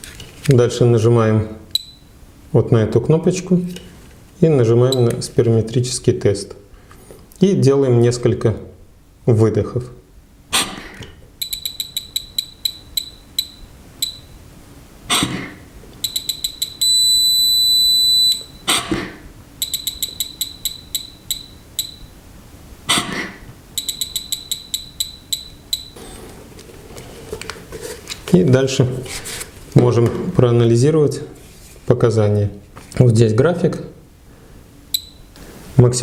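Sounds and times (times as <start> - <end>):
long steady beep: 1.8 - 2.1, 11.4 - 14.4, 16.0 - 18.8, 19.6 - 22.2, 23.8 - 26.2, 34.9 - 35.4
short high beeps: 11.4 - 14.4, 16.0 - 18.8, 19.6 - 22.1, 23.8 - 26.2, 34.9 - 35.3.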